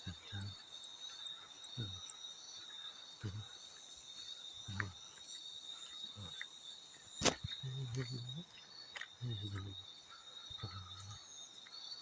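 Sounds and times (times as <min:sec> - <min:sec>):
crickets chirping: 0:00.0 - 0:12.0
sharp snap: 0:07.2 - 0:07.5.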